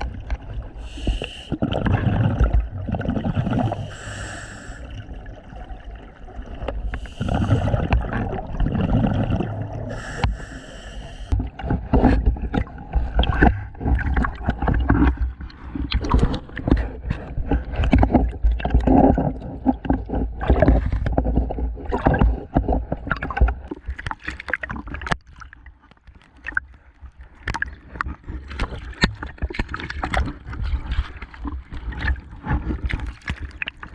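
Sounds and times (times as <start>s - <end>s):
gurgling bubbles: 0.0s - 25.5s, 27.4s - 33.9s
diver breathing through regulator: 0.8s - 1.8s, 3.3s - 5.1s, 6.9s - 8.0s, 9.8s - 11.4s.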